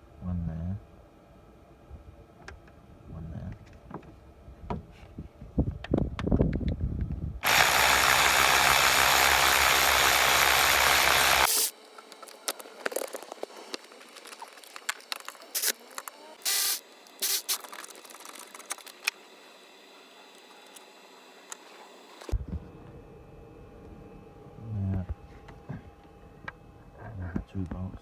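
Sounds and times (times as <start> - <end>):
ratchet clicking rapidly: 7.4 - 11.7.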